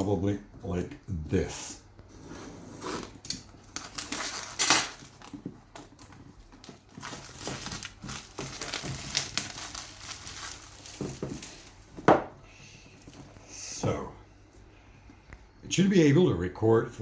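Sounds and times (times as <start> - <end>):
packaging crinkling and rustling: 2.8 - 12.1, 12.8 - 13.4.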